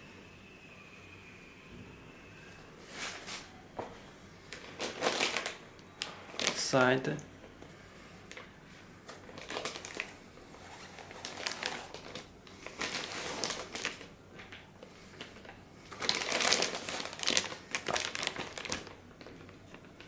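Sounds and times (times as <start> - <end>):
plastic packaging crinkling: 4.5 - 7.1, 9.0 - 20.0.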